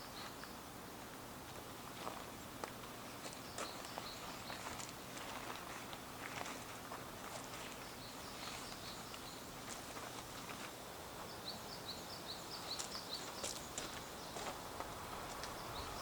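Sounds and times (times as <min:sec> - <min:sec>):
steady outdoor hiss: 0:00.0 - 0:16.0
small bird chirping: 0:03.3 - 0:04.9, 0:07.6 - 0:09.6, 0:11.2 - 0:14.6.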